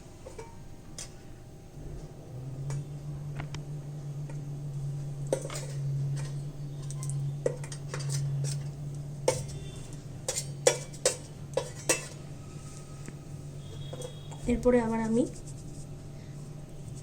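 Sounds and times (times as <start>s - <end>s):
utensils and dishes clinking: 0.0s - 1.3s, 5.2s - 12.4s, 13.6s - 14.5s
steady low hum: 0.0s - 17.0s.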